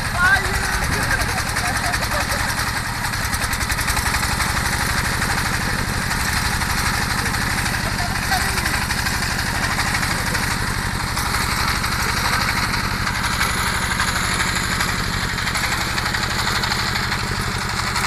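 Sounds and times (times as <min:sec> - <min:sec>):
small water pump engine: 0:00.0 - 0:18.0.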